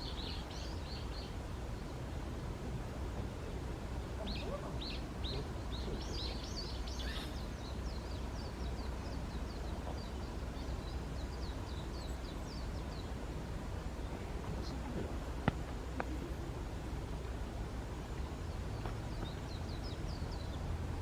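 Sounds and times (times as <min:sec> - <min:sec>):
steady low rumble: 0:00.0 - 0:21.0
small bird chirping: 0:04.2 - 0:13.2.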